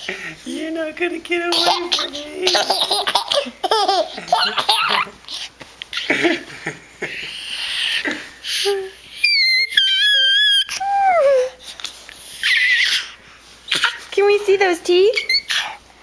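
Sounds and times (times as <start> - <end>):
baby giggling: 1.5 - 11.6
baby squealing: 9.0 - 11.6, 12.3 - 14.0, 15.2 - 15.8.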